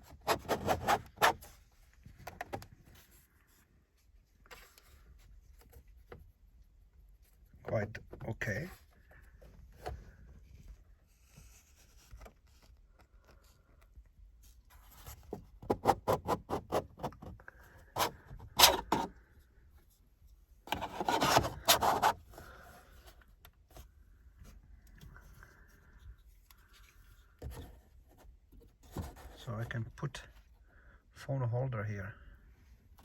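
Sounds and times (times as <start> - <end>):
plastic scraping against dashboard: 0.0 - 1.5, 15.4 - 19.2, 20.7 - 22.3.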